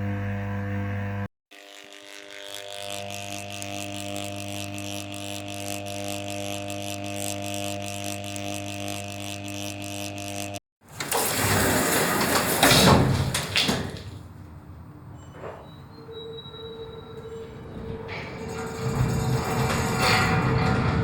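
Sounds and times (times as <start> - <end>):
machine humming: 0.0 - 12.4.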